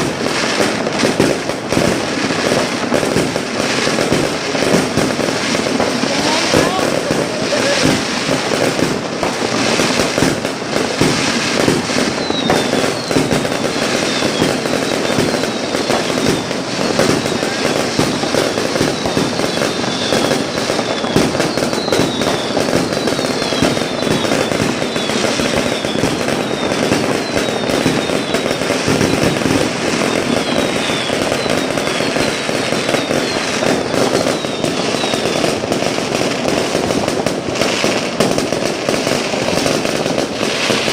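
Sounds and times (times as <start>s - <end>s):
fireworks bangs and crackles: 0.0s - 40.9s
high falling whistles: 11.9s - 35.6s.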